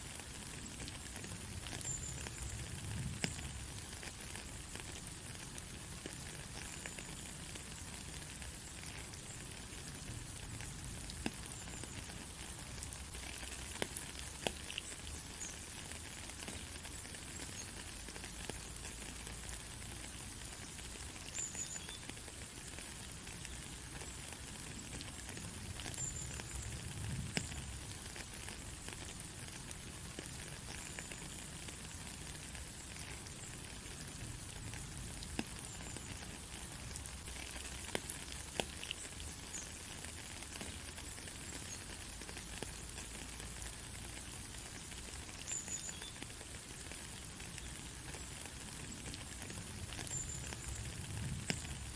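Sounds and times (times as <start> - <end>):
steady rain hiss: 0.0 - 51.9
raindrop taps: 11.1 - 12.0, 24.9 - 29.2, 37.1 - 40.9, 49.4 - 51.9.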